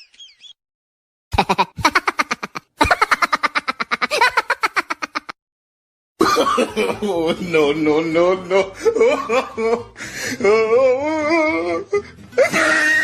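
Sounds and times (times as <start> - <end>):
voice-like laugh: 1.3 - 5.4, 12.4 - 13.0.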